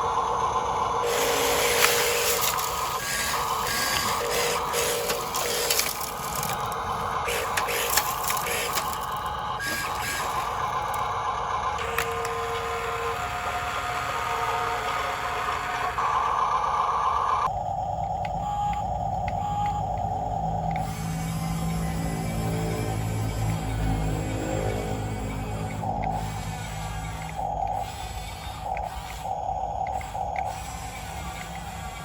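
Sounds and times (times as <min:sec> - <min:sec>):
toy motors whirring: 0:00.0 - 0:17.5, 0:18.5 - 0:32.0
rattles and clicks: 0:01.0 - 0:12.4.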